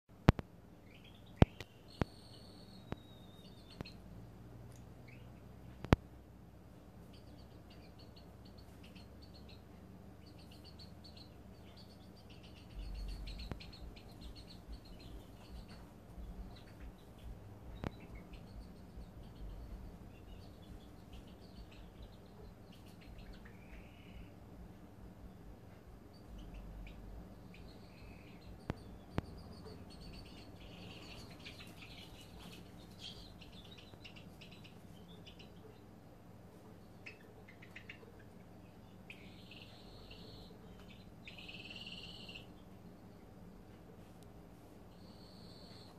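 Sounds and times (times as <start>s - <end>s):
chicks trilling chirps: 0.8s - 4.1s, 5.0s - 6.0s, 7.0s - 43.4s, 44.9s - 45.9s
low rumble: 7.7s - 32.0s.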